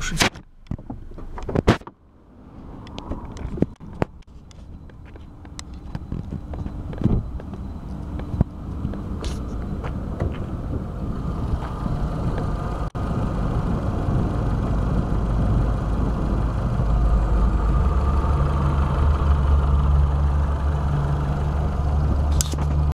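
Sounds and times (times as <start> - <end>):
car engine running: 0.0 - 22.9
low hum: 2.0 - 22.9.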